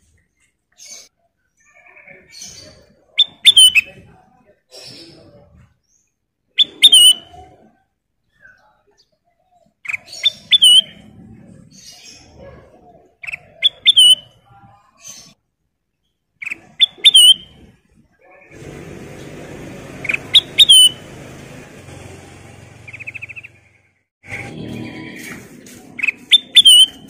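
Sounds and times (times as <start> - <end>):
bulbul whistling: 6.6 - 7.4, 9.9 - 11.0, 13.2 - 14.3, 16.4 - 17.6, 19.9 - 21.2, 22.8 - 23.7, 26.0 - 27.0.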